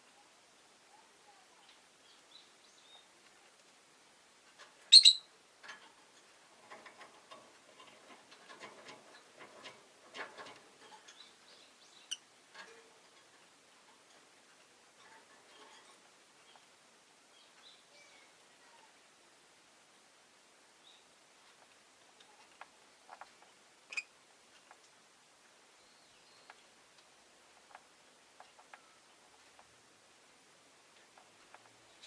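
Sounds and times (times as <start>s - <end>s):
soft bird chirps: 0.0s - 3.6s, 4.9s - 5.3s, 11.0s - 12.3s, 25.7s - 26.7s
quiet clicks and scratches: 3.2s - 3.8s, 4.4s - 4.9s, 5.6s - 16.8s, 21.3s - 25.6s, 26.4s - 30.0s, 30.7s - 32.0s.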